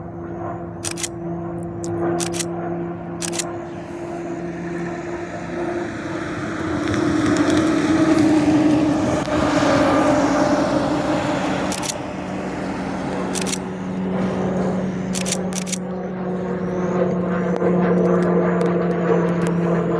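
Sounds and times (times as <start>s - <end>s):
propeller plane flying past: 0.0s - 19.9s
camera shutter clicks: 0.8s - 1.1s, 1.8s - 2.5s, 3.2s - 3.5s, 11.7s - 12.0s, 13.3s - 13.6s, 15.1s - 15.8s.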